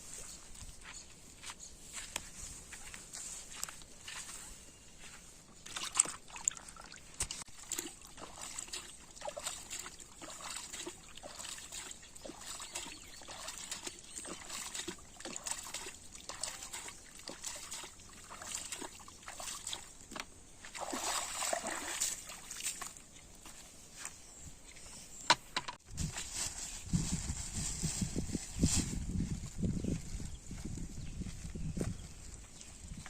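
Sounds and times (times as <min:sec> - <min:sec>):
water splashing and sloshing: 0:05.6 - 0:23.2.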